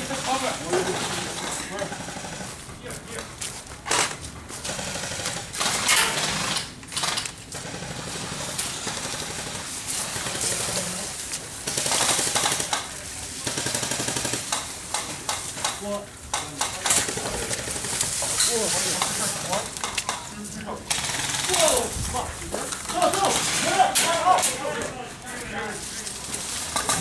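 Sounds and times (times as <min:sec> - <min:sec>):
airsoft guns firing full auto: 0:03.9 - 0:11.0, 0:11.6 - 0:20.3, 0:20.9 - 0:22.0, 0:22.8 - 0:24.6.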